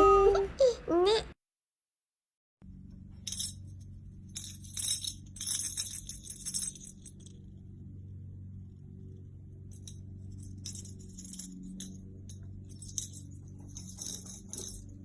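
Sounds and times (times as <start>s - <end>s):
steady low hum: 2.6s - 15.0s
small bell jingling: 3.2s - 7.4s, 9.7s - 15.0s.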